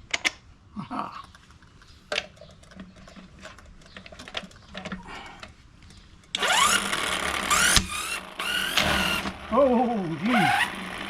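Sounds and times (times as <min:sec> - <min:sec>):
electric impact wrench whining: 0:06.3 - 0:09.6, 0:10.2 - 0:11.0.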